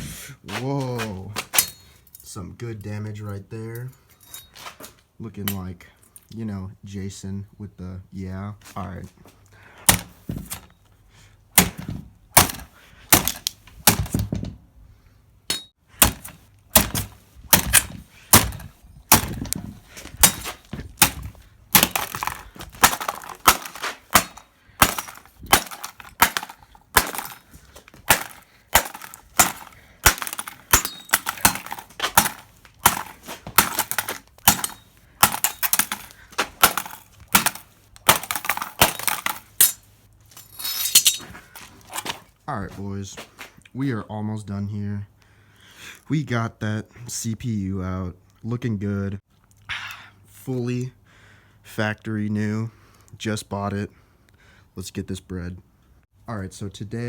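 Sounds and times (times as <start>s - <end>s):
machete chopping circuit board: 9.9s - 10.6s, 11.6s - 14.3s, 15.5s - 19.6s, 20.2s - 27.4s, 28.0s - 39.8s
board cracking and clattering: 9.9s - 10.7s, 11.6s - 14.6s, 16.0s - 39.8s.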